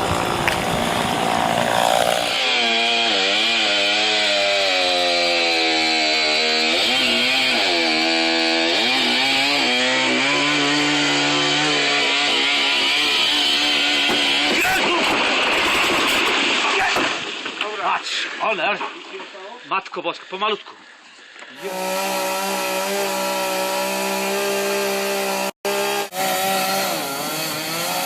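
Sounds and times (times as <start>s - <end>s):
chainsaw running at high revs: 0.0s - 14.6s, 21.6s - 28.0s.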